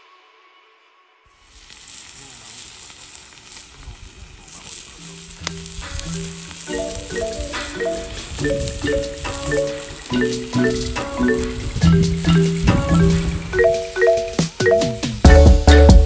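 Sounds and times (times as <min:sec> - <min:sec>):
meat sizzling on a griddle: 0:01.4 - 0:14.4
music with mallet notes: 0:05.0 - 0:16.0.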